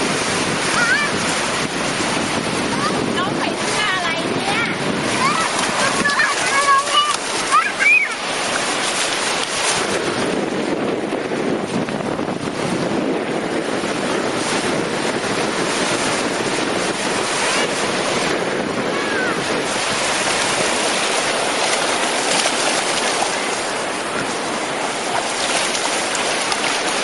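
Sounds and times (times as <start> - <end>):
sea surf washing onto beach: 0.0 - 27.0
wind buffeting microphone: 0.0 - 27.0.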